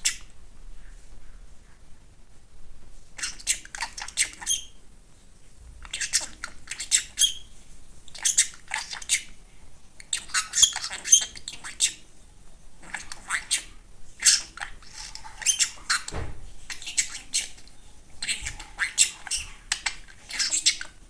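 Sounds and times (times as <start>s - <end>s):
budgerigar chattering: 18.2s - 21.0s.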